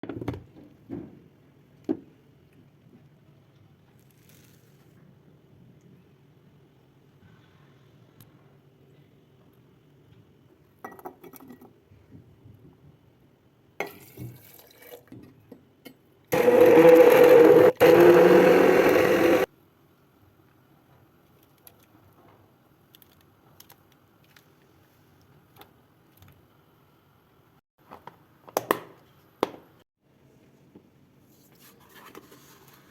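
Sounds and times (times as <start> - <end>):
electric blender running: 16.3 - 19.5.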